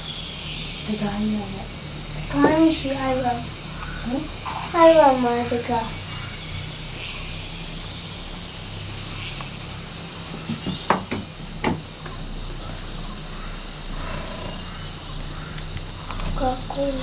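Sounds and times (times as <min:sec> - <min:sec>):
cable car low hum: 0:00.0 - 0:17.0
sharp knocks: 0:10.3 - 0:12.2.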